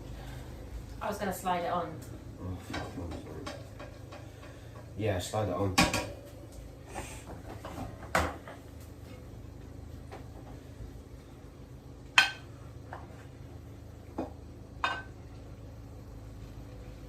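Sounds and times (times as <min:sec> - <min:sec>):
steady low hum: 0:00.0 - 0:17.0
frying pan clanking against plate: 0:05.8 - 0:06.2, 0:12.2 - 0:12.5, 0:14.8 - 0:15.2.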